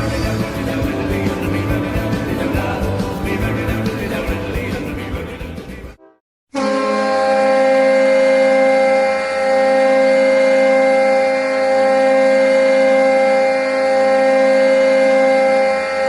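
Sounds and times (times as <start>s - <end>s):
goal horn blast: 6.0s - 16.0s.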